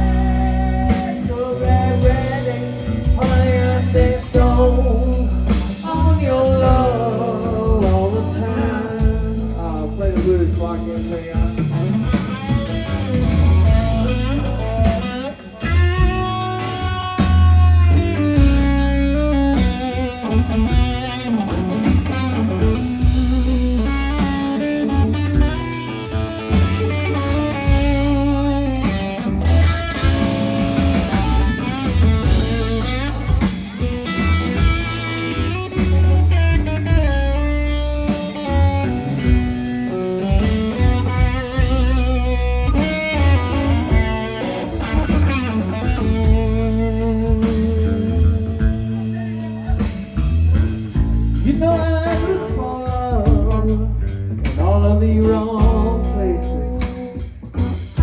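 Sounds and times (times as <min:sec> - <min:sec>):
bass and drums: 0:00.0 - 0:58.0
electric guitar lead line: 0:00.0 - 0:58.0.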